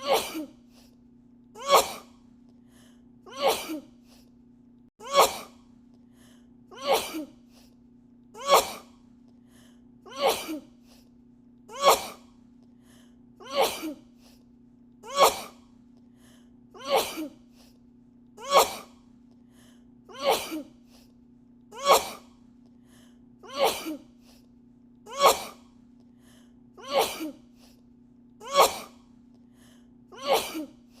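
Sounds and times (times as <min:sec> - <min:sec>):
woman sneezing: 0:00.0 - 0:00.6, 0:01.6 - 0:02.2, 0:03.3 - 0:03.9, 0:05.0 - 0:05.6, 0:06.8 - 0:07.4, 0:08.4 - 0:09.0, 0:11.7 - 0:12.2, 0:13.4 - 0:14.0, 0:15.1 - 0:15.6, 0:16.8 - 0:17.4, 0:18.4 - 0:19.0, 0:21.8 - 0:22.3, 0:23.5 - 0:24.1, 0:25.1 - 0:25.7, 0:26.8 - 0:27.4, 0:28.4 - 0:29.0, 0:30.2 - 0:30.8.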